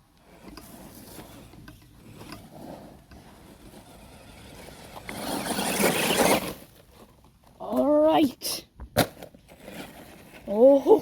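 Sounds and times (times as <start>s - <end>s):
rc car drivetrain whirring: 0.2s - 7.0s.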